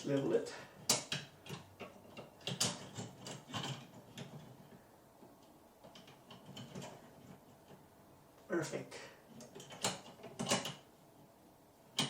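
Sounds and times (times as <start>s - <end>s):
light fixture clicking and scraping: 0.8s - 7.9s, 9.3s - 10.9s.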